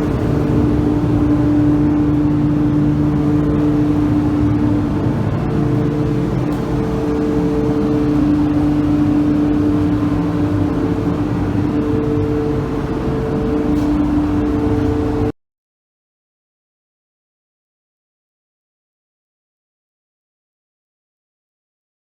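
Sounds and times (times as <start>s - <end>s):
higher machine tone: 0.0s - 15.3s
machine droning hum: 0.0s - 15.3s.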